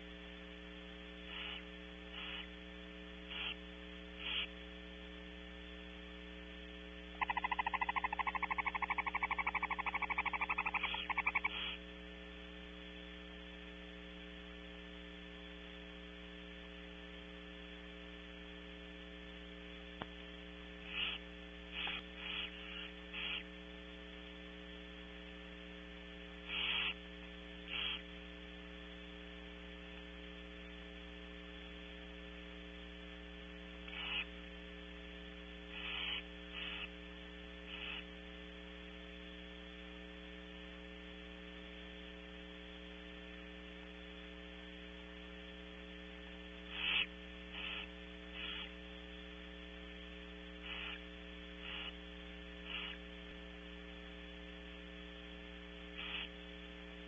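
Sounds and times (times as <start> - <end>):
electrical mains hum: 0.0 - 57.0
hissing barn owl calls: 1.3 - 2.5, 3.3 - 3.6, 4.2 - 4.5, 7.2 - 11.8, 20.8 - 23.5, 26.4 - 27.0, 27.7 - 28.0, 33.8 - 34.4, 35.7 - 37.0, 37.7 - 38.1, 46.7 - 48.8, 50.6 - 52.0, 52.6 - 53.0, 56.0 - 56.4.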